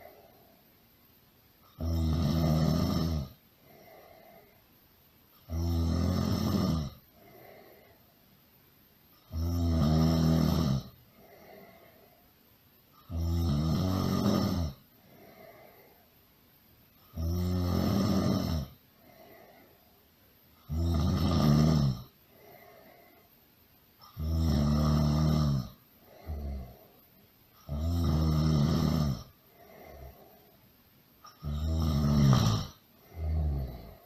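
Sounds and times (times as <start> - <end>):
person snoring loudly: 1.7 - 4.1, 5.4 - 7.6, 9.2 - 11.7, 13.0 - 15.6, 17.1 - 18.8, 20.6 - 22.1, 24.0 - 26.9, 27.6 - 30.3, 31.2 - 34.0
soft breath out: 3.6 - 4.7, 7.1 - 8.3, 11.1 - 12.4, 15.0 - 16.2, 19.0 - 20.0, 22.2 - 23.4, 29.4 - 30.7.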